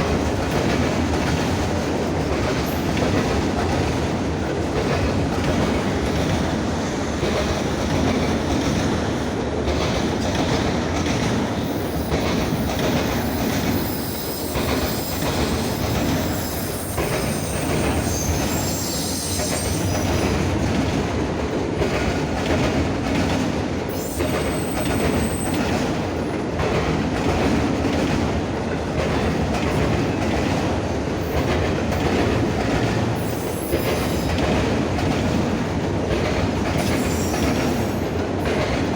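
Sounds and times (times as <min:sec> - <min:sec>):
freight train rumbling past: 0:00.0 - 0:38.9
high wheel squeals: 0:13.2 - 0:20.4.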